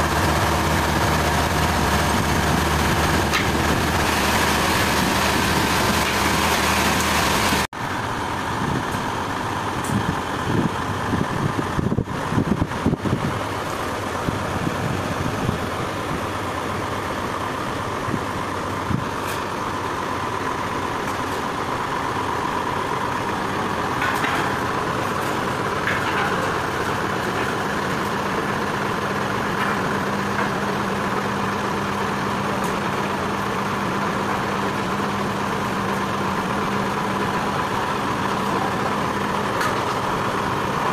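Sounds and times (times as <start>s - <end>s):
sawmill machinery humming and whining: 0.0s - 8.5s
knocks and clatters: 24.0s - 28.2s.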